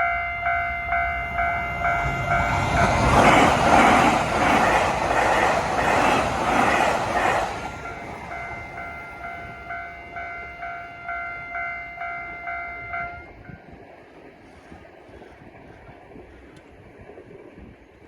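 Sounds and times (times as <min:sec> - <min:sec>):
level crossing warning bell: 0:00.0 - 0:05.1, 0:06.6 - 0:13.6
train rushing over rails: 0:00.0 - 0:17.2.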